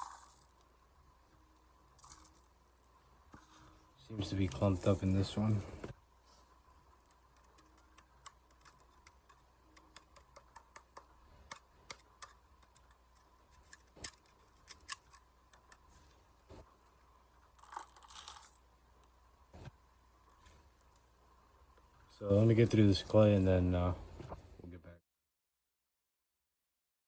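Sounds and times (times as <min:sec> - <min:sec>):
tool scraping clay: 0:00.0 - 0:21.1.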